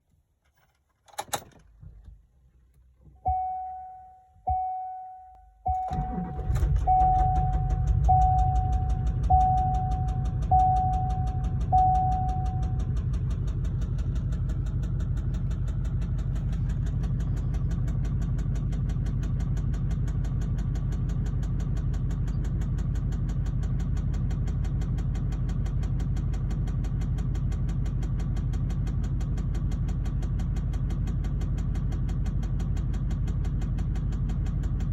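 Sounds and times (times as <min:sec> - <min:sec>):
vehicle warning chime: 0:03.3 - 0:13.0
diesel engine cranking and starting: 0:05.7 - 0:34.9
engine idling with rhythmic knock: 0:05.9 - 0:34.9.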